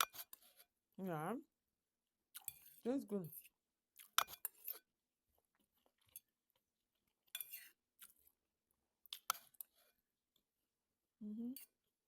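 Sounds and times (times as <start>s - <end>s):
person chewing: 2.3s - 2.8s, 3.9s - 4.8s, 5.4s - 8.4s, 9.0s - 9.8s.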